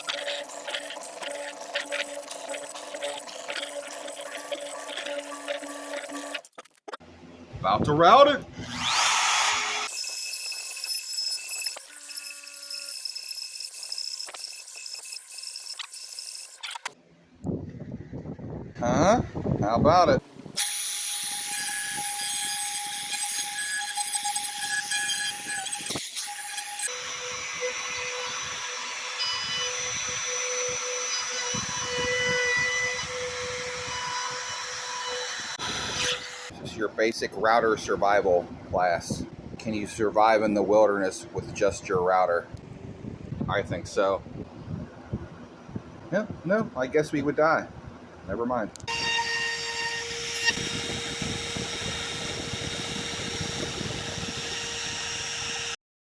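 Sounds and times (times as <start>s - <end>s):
wood router whining: 0.0s - 6.6s, 8.6s - 17.0s, 20.5s - 36.6s, 48.9s - 55.8s.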